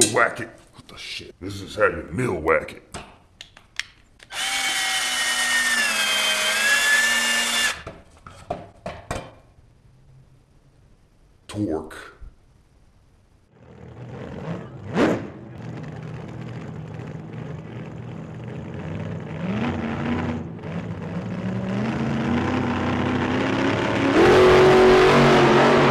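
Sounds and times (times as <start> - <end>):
car engine accelerating: 13.5 - 25.9.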